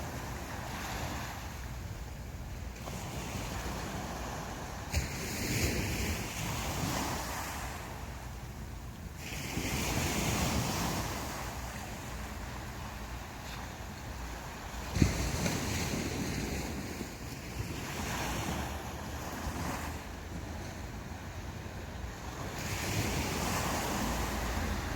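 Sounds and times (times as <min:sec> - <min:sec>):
sea waves breaking on beach: 0:00.0 - 0:24.9
wind buffeting microphone: 0:02.1 - 0:24.9.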